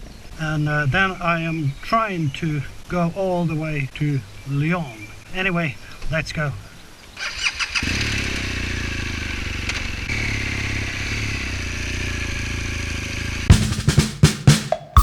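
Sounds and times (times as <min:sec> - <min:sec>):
motorcycle engine starting and running: 0:07.3 - 0:14.6.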